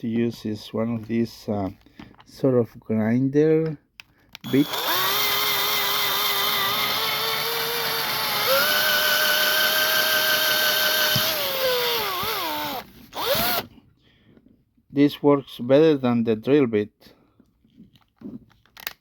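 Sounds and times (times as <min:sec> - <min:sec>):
rotary tool whining: 0:04.4 - 0:13.7.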